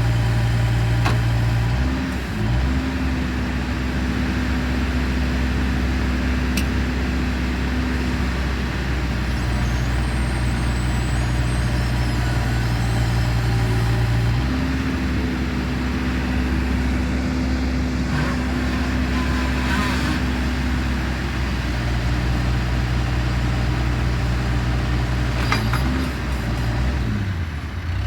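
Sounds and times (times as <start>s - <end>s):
vehicle engine idling: 13.9s - 25.2s.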